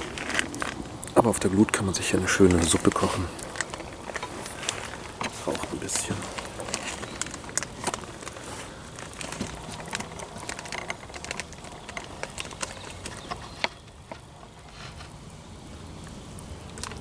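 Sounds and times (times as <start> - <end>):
campfire embers crackling: 0.0 - 17.0
soft fire hiss: 0.0 - 17.0.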